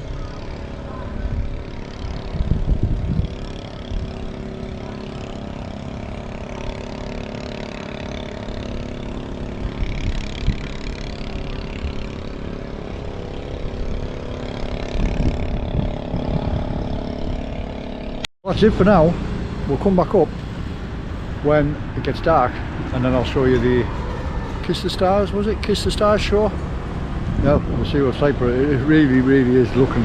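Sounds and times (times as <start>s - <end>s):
engine-like hum: 0.0s - 30.0s
low rumble: 5.6s - 19.8s.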